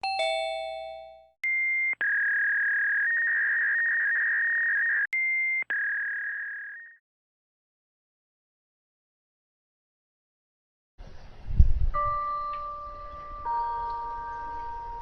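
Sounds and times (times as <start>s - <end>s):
bell-like chime note: 0.0s - 1.4s, 12.0s - 15.0s.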